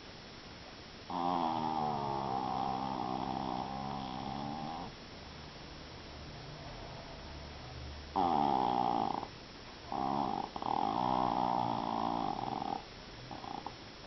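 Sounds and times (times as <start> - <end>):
dog snoring: 1.1 - 5.0, 8.1 - 9.3, 9.9 - 13.8.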